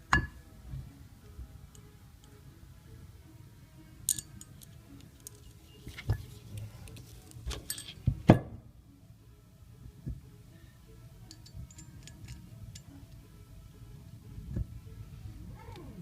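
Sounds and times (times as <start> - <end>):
low steady hum: 0.0 - 16.0
metallic clicks of tools: 4.1 - 5.5, 11.3 - 12.9.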